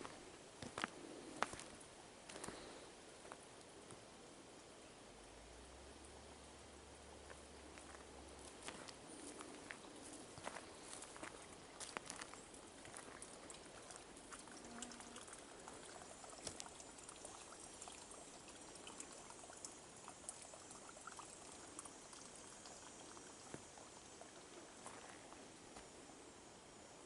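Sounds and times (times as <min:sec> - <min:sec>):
footsteps crunching through grass: 0:00.0 - 0:01.7, 0:07.3 - 0:13.3
low hiss: 0:00.0 - 0:27.0.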